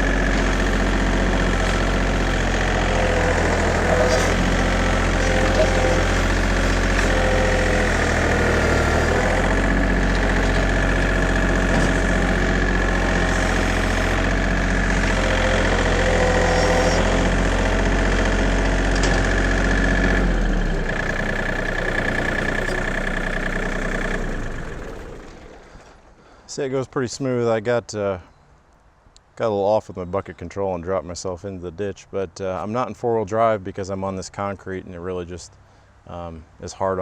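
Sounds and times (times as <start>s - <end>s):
tractor diesel engine running: 0.0s - 27.0s.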